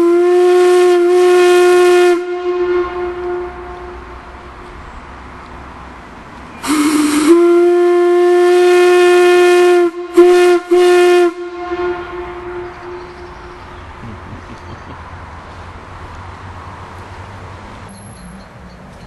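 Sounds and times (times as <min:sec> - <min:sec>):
steam whistle blowing: 0:00.0 - 0:04.2, 0:06.6 - 0:13.6.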